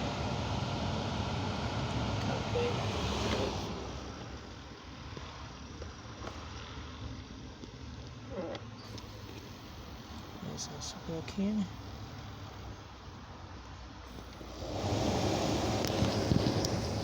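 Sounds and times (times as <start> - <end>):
blower air rushing: 0.0 - 4.3, 14.1 - 17.0
car engine idling: 0.0 - 17.0.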